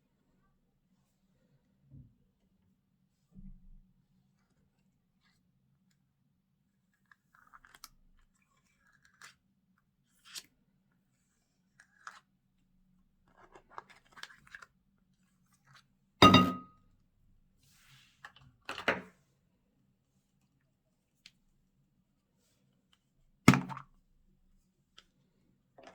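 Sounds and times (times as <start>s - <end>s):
loud ringing knock: 16.2s - 16.7s.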